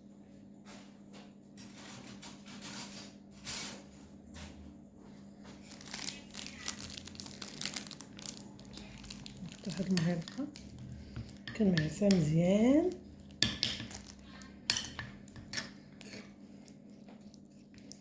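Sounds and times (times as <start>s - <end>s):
steady low hum: 3.9s - 18.0s
crinkling rustling handling noise: 5.3s - 18.0s.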